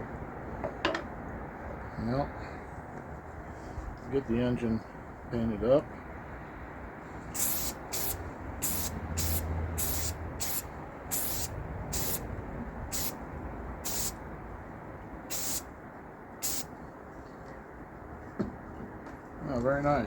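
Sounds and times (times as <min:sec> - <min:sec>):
spray paint can hissing: 0:07.3 - 0:12.3, 0:12.9 - 0:13.2, 0:13.8 - 0:14.2, 0:15.3 - 0:15.6, 0:16.4 - 0:16.7.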